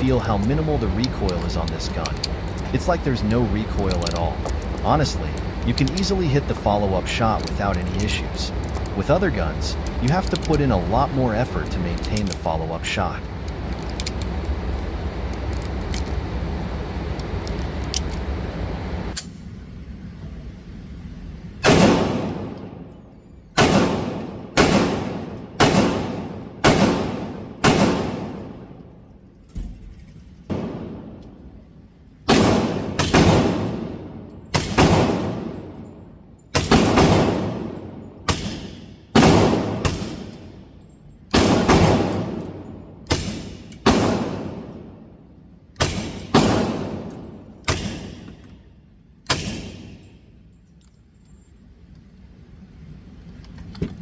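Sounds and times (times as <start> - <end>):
pistol shots with echo: 21.6 - 22.8, 23.6 - 28.8, 30.5 - 31.2, 32.3 - 35.8, 36.5 - 40.5, 41.3 - 45.0, 45.8 - 48.4, 49.3 - 50.1.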